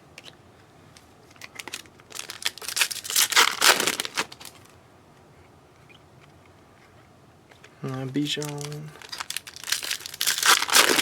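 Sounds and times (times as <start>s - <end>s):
foil wrapper crinkling and tearing: 1.3s - 4.7s, 8.1s - 11.0s.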